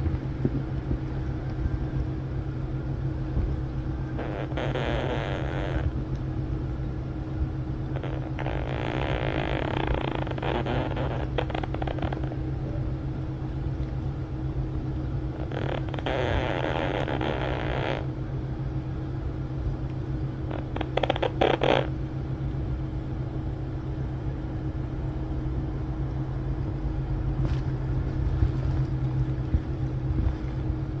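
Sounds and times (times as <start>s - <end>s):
parrot snoring rasp: 4.2s - 5.9s, 8.0s - 12.3s, 15.4s - 18.0s
low rumble: 23.8s - 31.0s.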